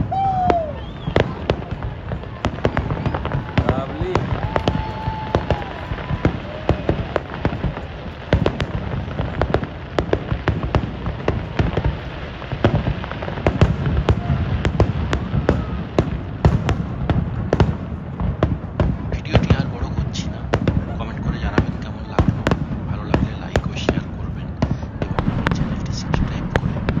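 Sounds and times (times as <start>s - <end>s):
fireworks bangs and crackles: 0.0s - 27.0s
steady low rumble: 24.1s - 27.0s.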